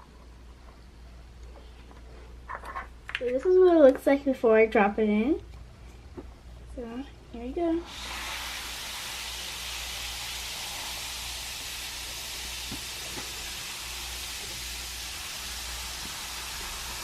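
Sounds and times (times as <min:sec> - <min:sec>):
tablet fizzing in water: 0:07.8 - 0:17.0.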